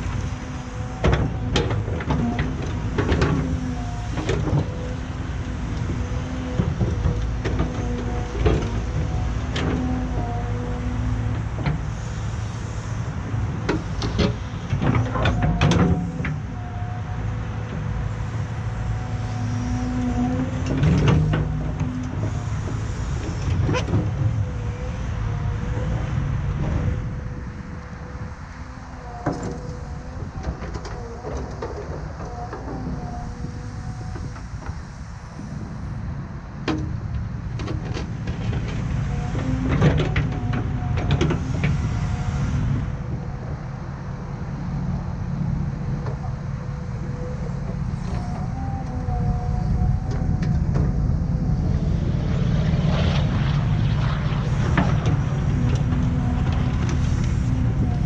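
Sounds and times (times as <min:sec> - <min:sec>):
diesel engine running: 0:00.0 - 0:58.0
steady whine: 0:40.6 - 0:58.0.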